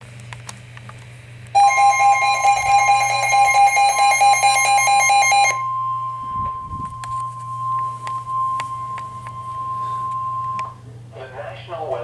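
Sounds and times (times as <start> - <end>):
pulsing electronic alarm: 1.6 - 10.9
steady warning tone: 1.6 - 12.0.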